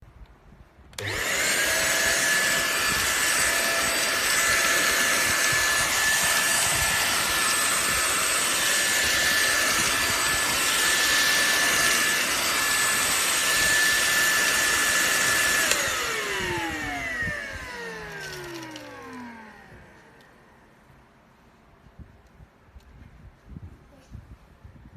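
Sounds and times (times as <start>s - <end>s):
vacuum cleaner whining: 1.0s - 20.7s.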